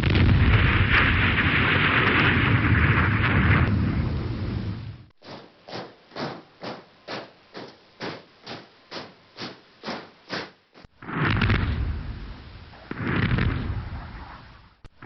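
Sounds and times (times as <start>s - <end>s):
deep loud blast: 0.0s - 5.1s, 11.0s - 14.2s
marching footsteps: 5.2s - 10.9s.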